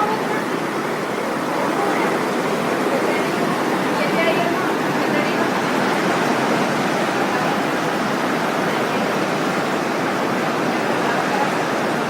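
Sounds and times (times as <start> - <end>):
heavy rain falling: 0.0 - 12.0.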